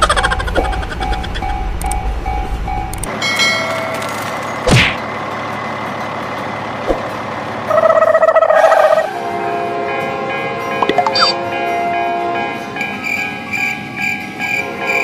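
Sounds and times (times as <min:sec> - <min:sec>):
low vehicle rumble: 0:00.0 - 0:09.0
repeating beep: 0:10.8 - 0:11.4.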